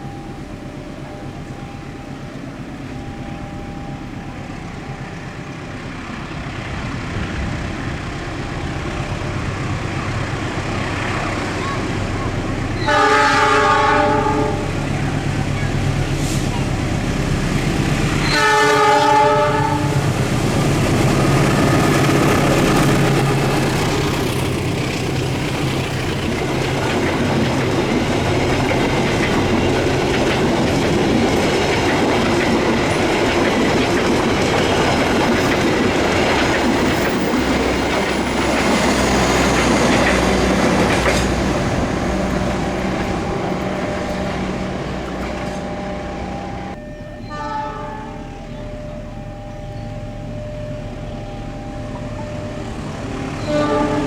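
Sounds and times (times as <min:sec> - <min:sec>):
train rumbling past: 0:00.0 - 0:54.0
wheels clattering over rail joints: 0:04.6 - 0:48.0
train horn: 0:11.6 - 0:16.6, 0:18.2 - 0:20.2, 0:40.8 - 0:48.7, 0:53.3 - 0:54.0.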